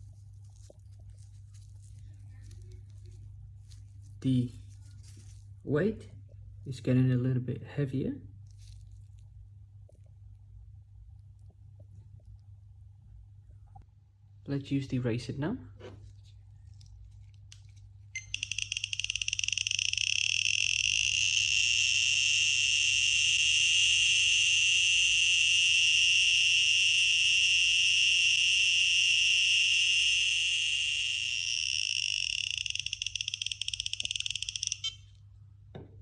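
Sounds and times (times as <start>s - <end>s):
radiation detector clicking buzz: 18.2s - 35.1s.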